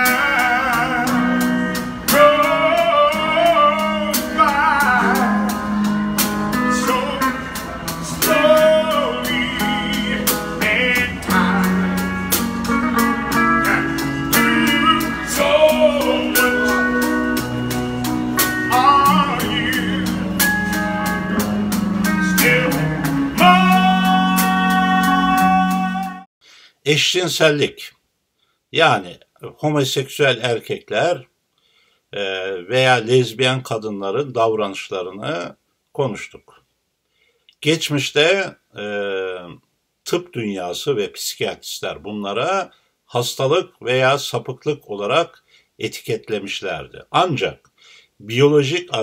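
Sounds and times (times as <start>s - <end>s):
steady drum beat: 0.0s - 26.2s
bass: 0.0s - 26.3s
guitar: 0.0s - 26.3s
person singing: 0.0s - 26.3s.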